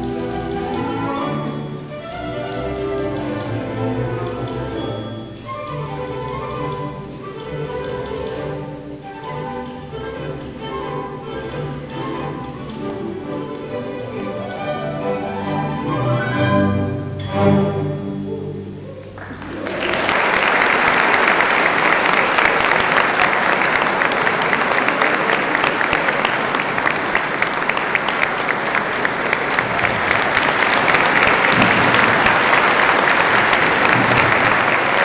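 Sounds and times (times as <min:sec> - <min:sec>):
orchestral notes: 0:00.0 - 0:20.0
audience applause: 0:19.1 - 0:35.0.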